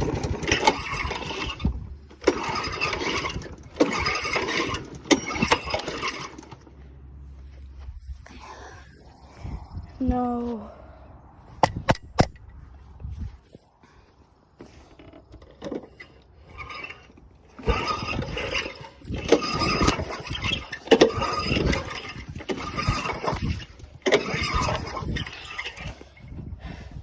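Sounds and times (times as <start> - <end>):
lawnmower pull-start: 0.0 - 6.9, 14.6 - 26.3.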